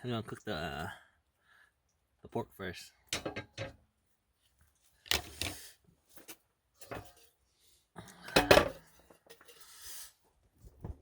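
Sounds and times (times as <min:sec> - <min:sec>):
cooking things rustling and knocking: 0:03.1 - 0:03.9, 0:05.0 - 0:07.4, 0:08.3 - 0:11.0.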